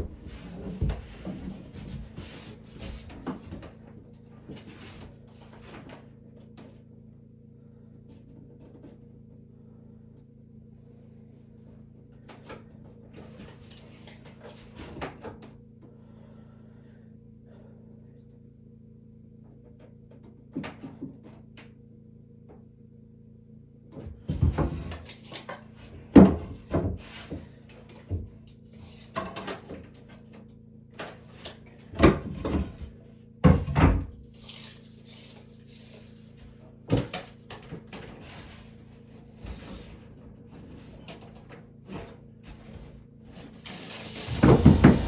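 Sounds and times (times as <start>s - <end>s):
brief hiss: 43.7s - 45.0s
loud thumps: 44.1s - 45.0s
wooden knocks and clunks: 44.3s - 45.0s.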